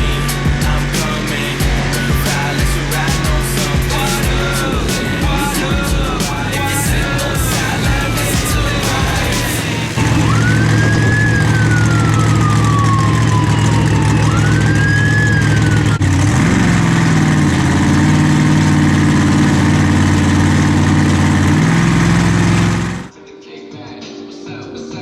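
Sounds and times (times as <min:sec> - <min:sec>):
quiet music: 0:00.0 - 0:15.2, 0:23.1 - 0:25.0
siren wailing: 0:00.0 - 0:16.7
low engine-like drone: 0:00.0 - 0:23.1.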